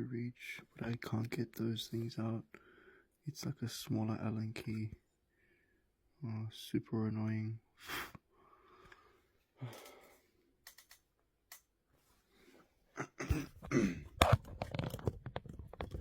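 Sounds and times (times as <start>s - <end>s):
breathy sighing: 8.0s - 10.3s.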